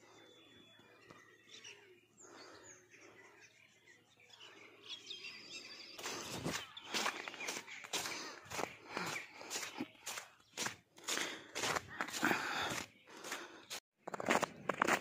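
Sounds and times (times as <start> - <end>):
small birds chirping: 0.0 - 15.0
footsteps crunching in snow: 6.0 - 15.0.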